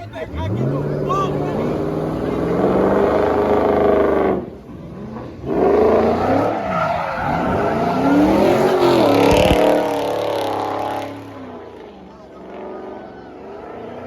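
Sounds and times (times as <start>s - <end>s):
car engine revving hard: 0.3s - 14.0s
tyres squealing: 6.2s - 9.3s.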